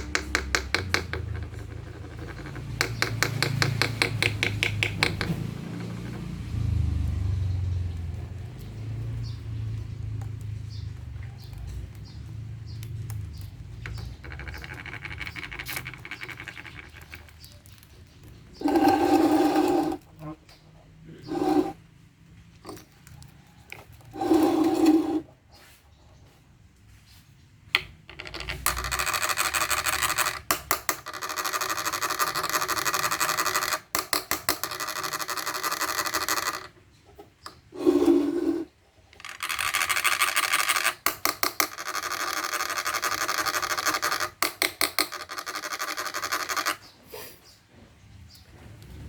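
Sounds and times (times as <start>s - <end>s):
harsh rasping scraping: 18.6s - 20.3s, 21.1s - 21.8s, 24.0s - 25.3s, 37.7s - 38.8s.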